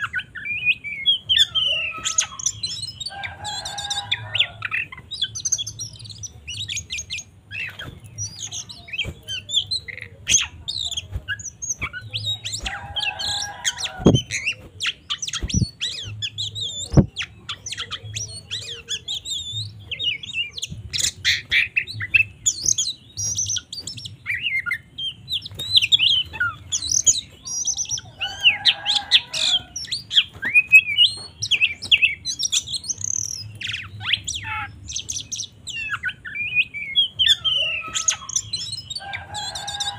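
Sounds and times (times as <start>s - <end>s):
harsh low bird calls: 0.0s - 39.9s
songbird singing: 0.0s - 39.9s.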